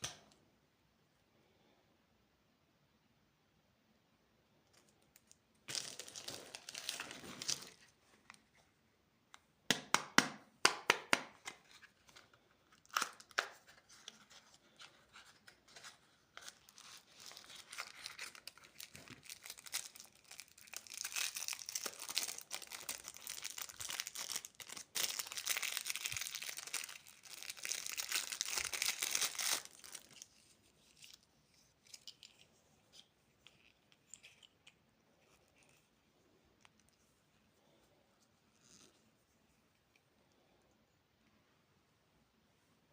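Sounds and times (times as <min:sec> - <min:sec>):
plastic wrappers crinkling: 0:05.2 - 0:08.4, 0:11.8 - 0:34.8.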